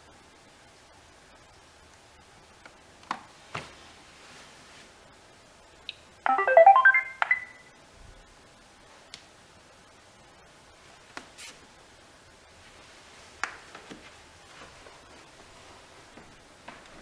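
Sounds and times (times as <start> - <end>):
robot vacuum beeping tune: 6.3 - 7.6.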